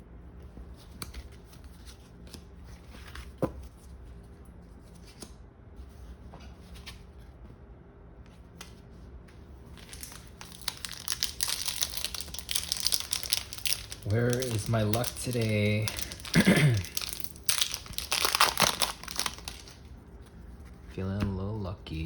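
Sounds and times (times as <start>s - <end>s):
foil wrapper crinkling and tearing: 9.7s - 19.9s
trading cards clicking: 9.8s - 19.8s.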